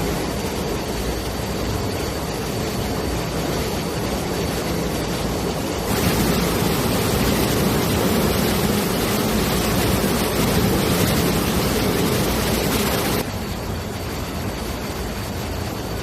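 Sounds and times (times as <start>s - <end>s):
water rushing: 4.0s - 13.3s.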